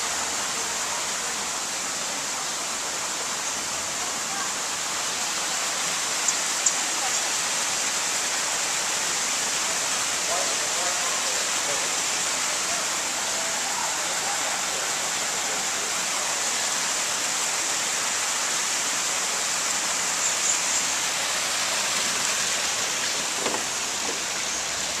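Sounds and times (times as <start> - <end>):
running water hissing: 0.0 - 25.0
faint brief knocks: 23.3 - 24.2.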